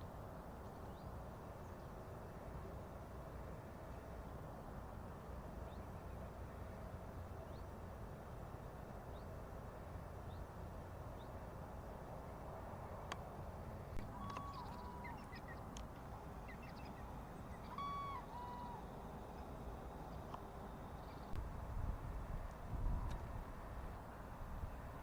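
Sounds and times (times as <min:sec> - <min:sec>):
small birds chirping: 0:14.0 - 0:18.7
bird two-note call: 0:14.1 - 0:15.2, 0:17.6 - 0:18.8.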